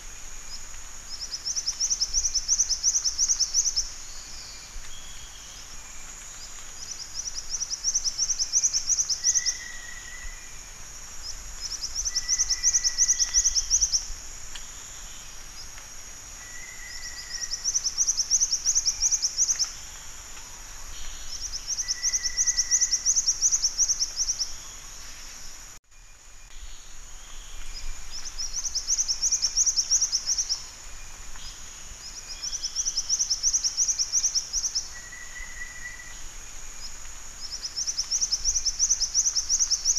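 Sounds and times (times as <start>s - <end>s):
insects hissing: 0.0s - 39.9s.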